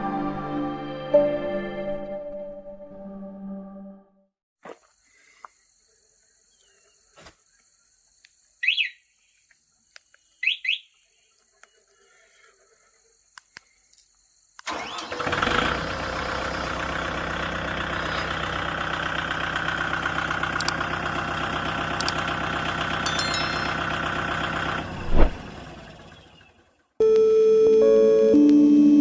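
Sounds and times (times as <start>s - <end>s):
tractor diesel engine: 14.7s - 26.8s.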